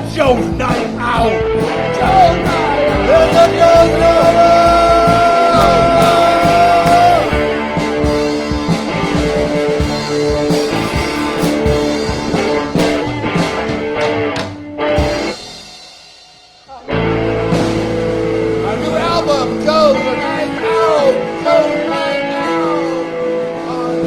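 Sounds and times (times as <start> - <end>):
instrumental rock music: 0.0 - 24.0.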